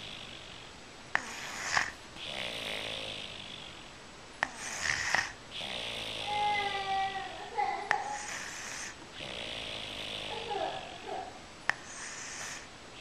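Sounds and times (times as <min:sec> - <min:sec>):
child snoring: 0:00.0 - 0:03.8, 0:04.4 - 0:12.7.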